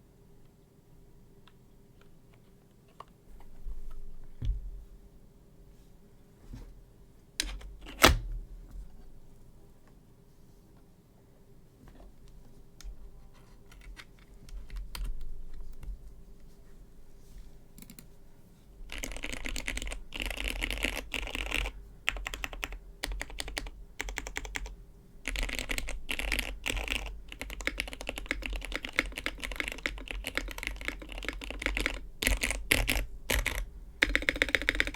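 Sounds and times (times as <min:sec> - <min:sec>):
mechanical keyboard typing: 0:13.7 - 0:15.4, 0:18.9 - 0:34.9.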